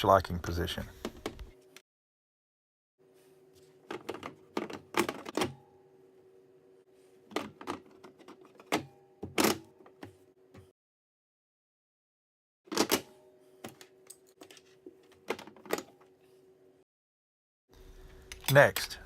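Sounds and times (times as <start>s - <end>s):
faint steady hum: 17.8s - 19.0s.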